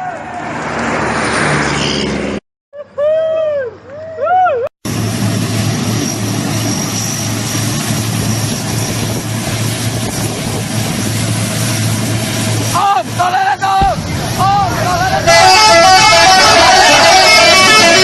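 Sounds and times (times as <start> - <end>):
road or wind noise: 0.0 - 2.4, 4.9 - 18.0
vehicle engine drone: 4.9 - 18.0
bus horn warbling tune: 15.0 - 18.0.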